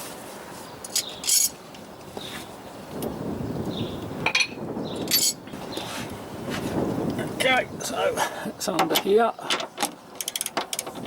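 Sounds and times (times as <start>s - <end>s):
scraping and handling noise: 0.0s - 2.6s, 4.3s - 6.8s
metallic clinks and knocks: 0.9s - 1.6s, 4.2s - 5.4s.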